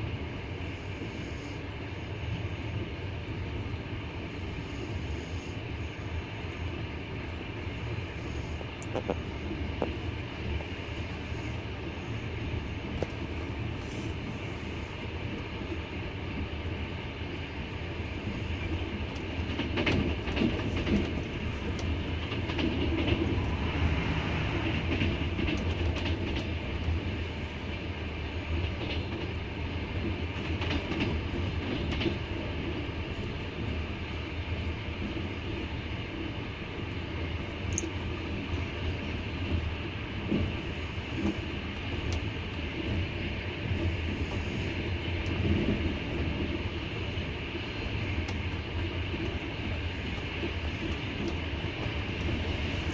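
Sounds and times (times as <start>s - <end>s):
train rumbling on rails: 0.0s - 52.9s.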